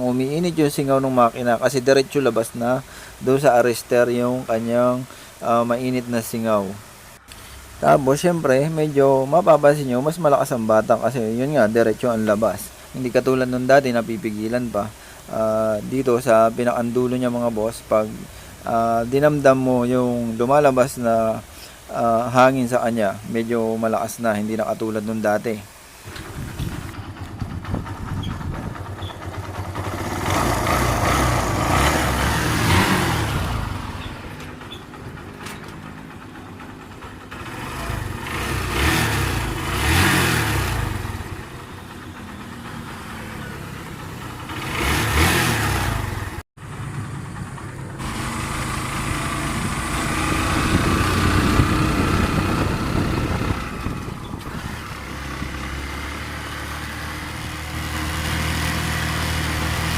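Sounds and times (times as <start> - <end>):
motorcycle engine revving: 26.0 - 59.9.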